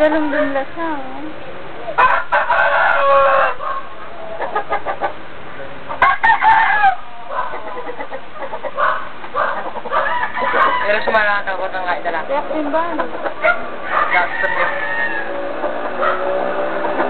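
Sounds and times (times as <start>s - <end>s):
chickens clucking: 0.0s - 17.0s
rooster crowing: 2.0s - 4.7s, 6.0s - 7.7s, 8.8s - 11.2s, 13.4s - 17.0s.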